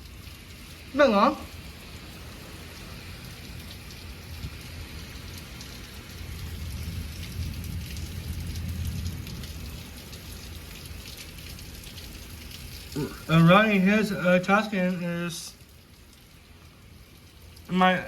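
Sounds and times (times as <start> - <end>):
heavy rain falling: 0.0 - 18.0
low roll of thunder: 6.3 - 10.4.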